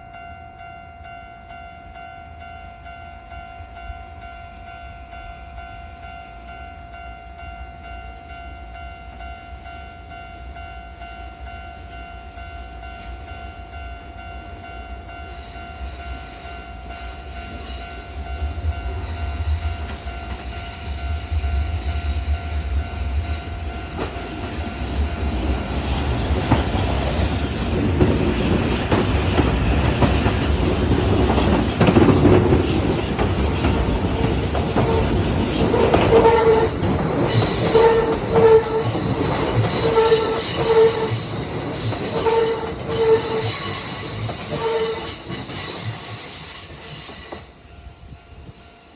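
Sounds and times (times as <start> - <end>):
train rumble: 3.6 - 48.9
wheels clattering over rail joints: 23.9 - 46.4.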